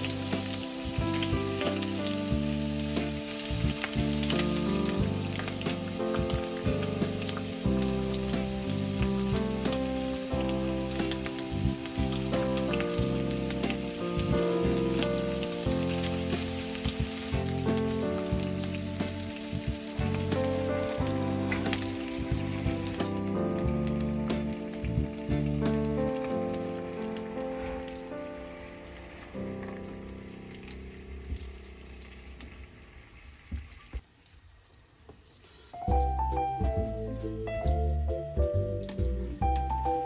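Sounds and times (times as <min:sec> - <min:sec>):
food sizzling in a pan: 0:00.0 - 0:23.3
background music with held notes: 0:00.0 - 0:30.9, 0:35.8 - 0:40.0.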